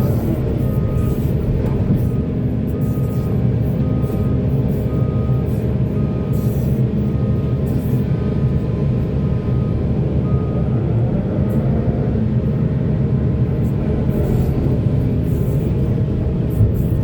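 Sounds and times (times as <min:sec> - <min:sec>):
diesel machinery engine rumble: 0:00.0 - 0:17.0.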